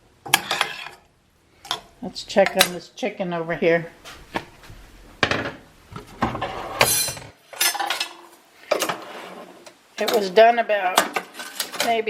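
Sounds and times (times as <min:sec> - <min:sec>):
metal cookware clattering: 0:00.2 - 0:01.1, 0:01.7 - 0:02.8, 0:06.2 - 0:09.4, 0:10.0 - 0:12.0.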